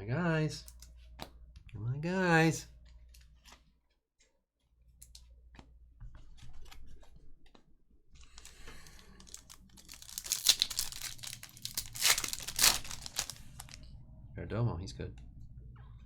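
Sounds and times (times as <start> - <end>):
foil wrappers tearing and crinkling: 8.2 - 13.8.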